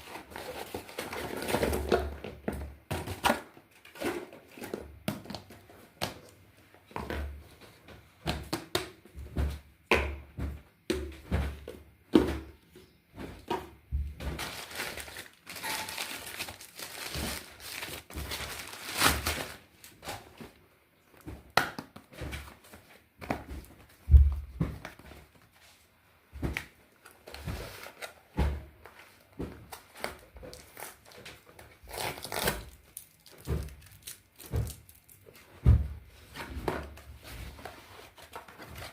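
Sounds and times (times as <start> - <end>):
box knocks and thuds: 9.2 - 12.6, 23.2 - 24.9
wrapping crinkling and tearing: 14.3 - 20.3, 29.7 - 35.5.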